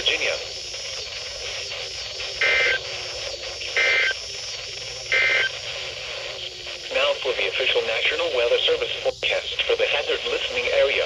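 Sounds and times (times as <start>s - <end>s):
radio receiver hiss: 0.0s - 11.0s
two-tone digital data bursts: 0.0s - 11.0s.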